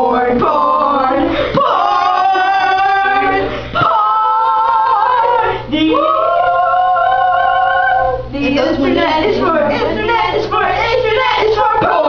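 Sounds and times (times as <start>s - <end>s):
voices singing mock-operatic notes: 0.0s - 12.0s
singers breathing: 1.2s - 1.6s, 3.4s - 3.8s.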